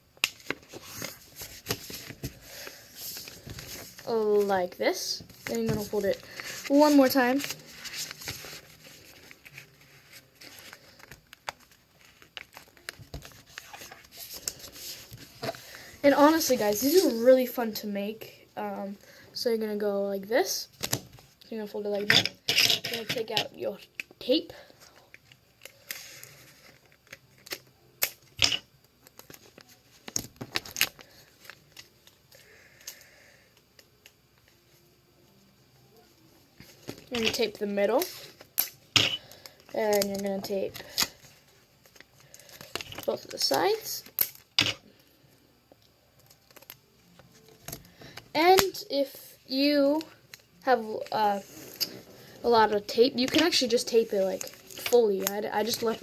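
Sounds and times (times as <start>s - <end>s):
paper rustling and crinkling: 0.3s - 17.2s, 49.9s - 56.0s.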